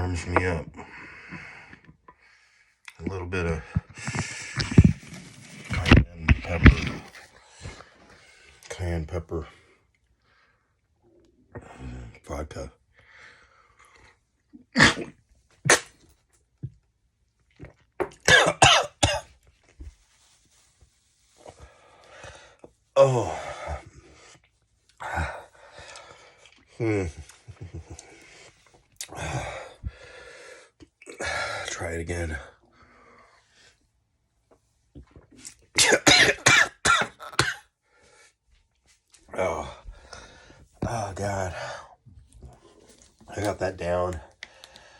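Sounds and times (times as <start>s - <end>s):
person coughing hard: 14.8s - 15.1s, 18.3s - 19.3s, 35.8s - 37.6s.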